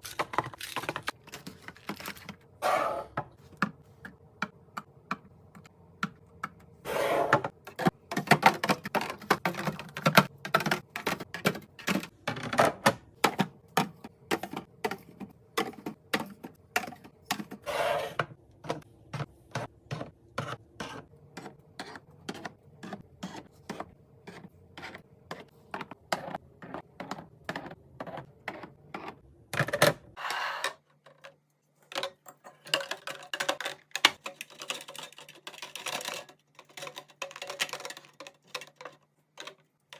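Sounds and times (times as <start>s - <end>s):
packaging rustling: 0.0s - 2.4s
containers clicking and clacking: 0.0s - 2.6s, 7.3s - 17.6s, 31.0s - 39.9s.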